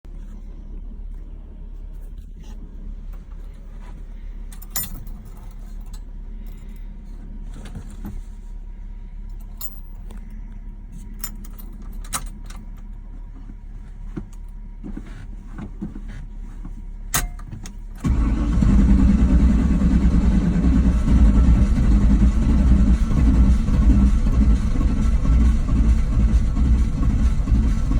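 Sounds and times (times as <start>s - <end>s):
low steady hum: 0.0s - 27.9s
engine cranking without starting: 18.0s - 27.9s.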